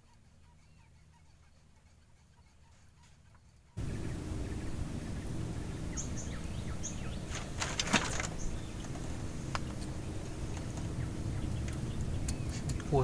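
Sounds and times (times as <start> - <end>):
high bird chirps: 3.7 - 12.9
steady low rumble: 3.8 - 13.0
sharp clicks: 11.5 - 12.9.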